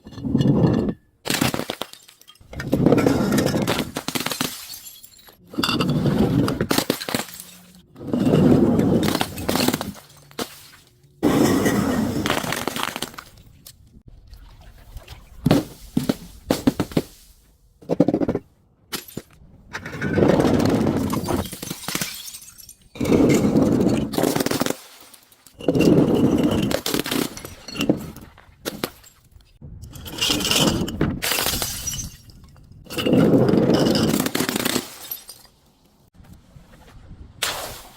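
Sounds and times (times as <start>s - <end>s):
objects crunching and breaking: 1.2s - 13.7s.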